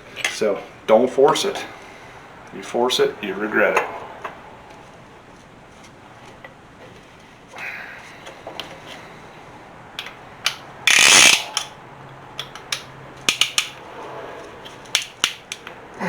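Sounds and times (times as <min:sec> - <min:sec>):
metal ratcheting clicks: 0:10.5 - 0:11.8, 0:12.4 - 0:13.8
loud metal rasp: 0:10.9 - 0:11.7.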